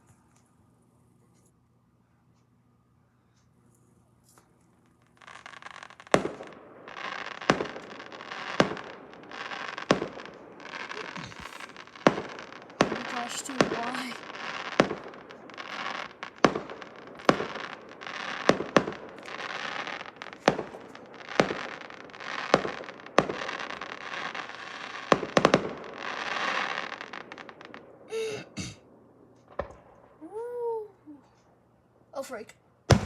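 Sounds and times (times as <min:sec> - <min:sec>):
fireworks bangs and crackling: 0:04.8 - 0:30.5.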